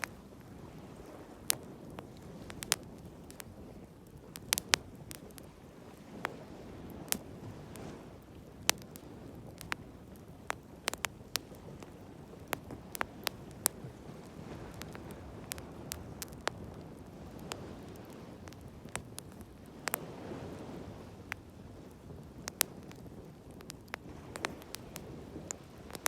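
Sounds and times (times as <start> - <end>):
sea waves rushing: 0.0 - 3.8
bonfire crackling and popping: 0.0 - 26.0.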